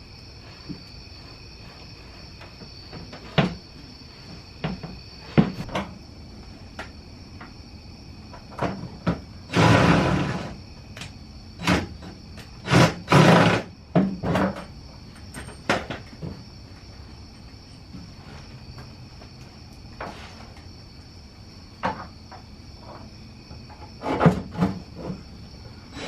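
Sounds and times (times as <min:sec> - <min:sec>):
knocks and clunks of tools: 0:02.6 - 0:03.6, 0:04.6 - 0:06.0, 0:08.3 - 0:09.3, 0:13.9 - 0:16.4, 0:21.8 - 0:25.2.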